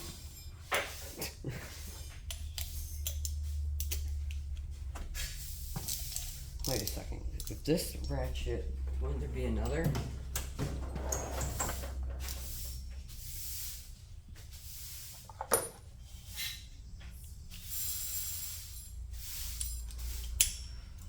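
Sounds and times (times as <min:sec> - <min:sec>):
socket extensions and ratchet clicking: 0:02.3 - 0:04.4, 0:19.4 - 0:21.0.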